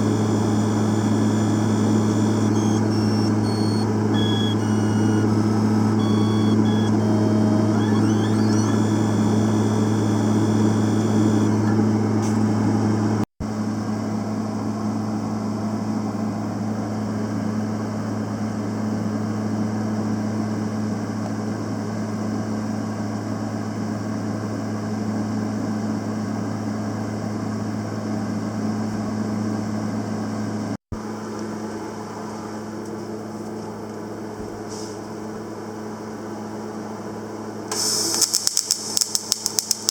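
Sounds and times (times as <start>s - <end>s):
welding machine humming: 0.0s - 11.8s, 37.7s - 39.9s.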